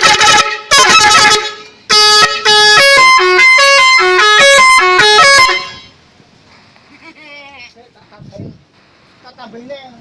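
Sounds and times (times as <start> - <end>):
air horn playing fast tune: 0.0 - 6.0.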